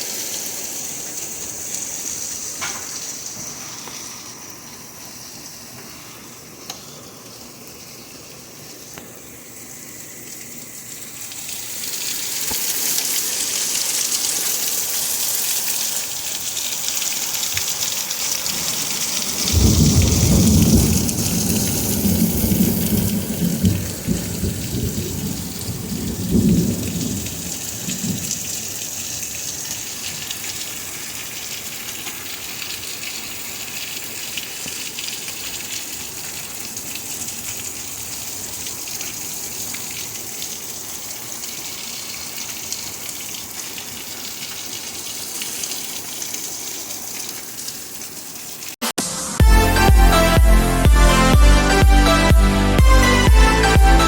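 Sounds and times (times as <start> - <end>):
rain falling: 0.0 - 50.4, 51.0 - 54.0
low rumble of thunder: 18.5 - 28.7.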